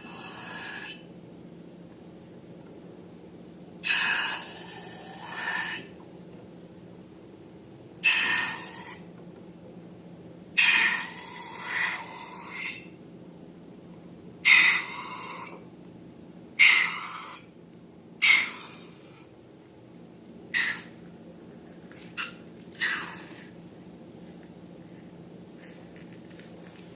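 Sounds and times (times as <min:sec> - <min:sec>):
faint low hum: 0:00.0 - 0:26.9
slime hissing squelches: 0:08.0 - 0:09.0, 0:18.2 - 0:19.1, 0:20.6 - 0:21.0.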